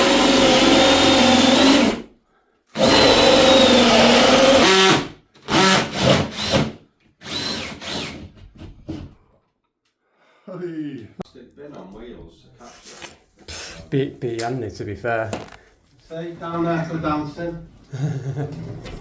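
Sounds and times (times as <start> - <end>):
power drill whining: 0.0 - 2.1, 2.7 - 8.3.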